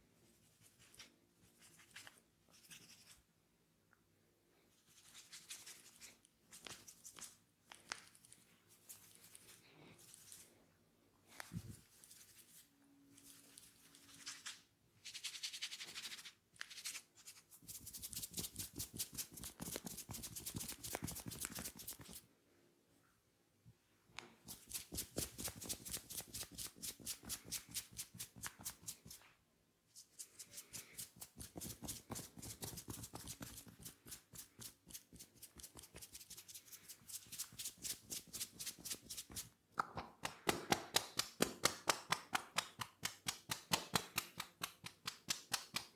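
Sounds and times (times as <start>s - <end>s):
hands tapping on body: 39.8s - 45.9s.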